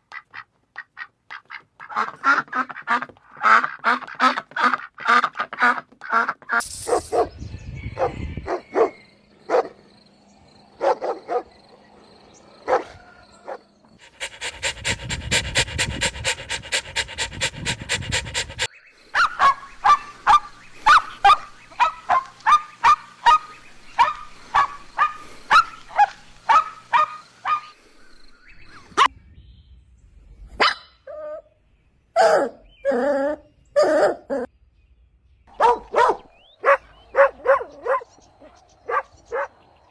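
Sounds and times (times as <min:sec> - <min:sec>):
puppies barking and yapping: 0:14.0 - 0:27.7.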